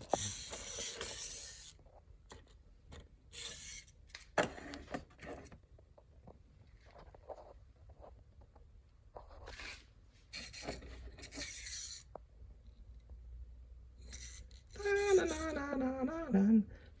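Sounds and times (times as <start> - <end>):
rustling and scraping handling noises: 3.4 - 12.2.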